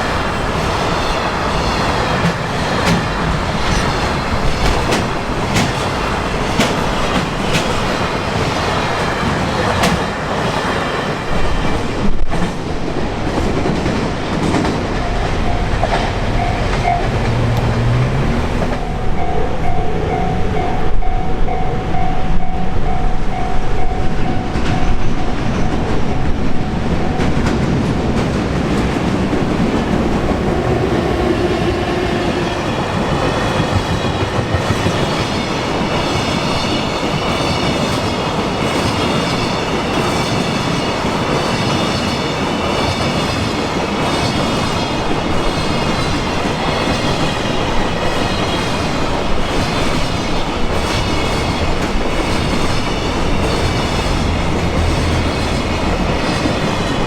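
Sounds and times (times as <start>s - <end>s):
train wheels clattering over rail joints: 0.2s - 19.3s, 32.9s - 57.0s
pulsing crossing alarm: 15.0s - 27.6s.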